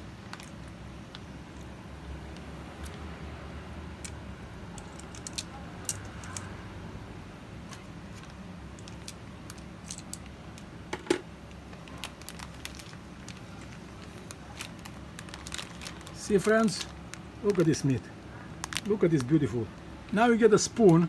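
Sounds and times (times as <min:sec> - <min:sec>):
steady low hum: 0:00.0 - 0:21.0
plastic bag crinkling: 0:07.8 - 0:10.6, 0:11.4 - 0:21.0.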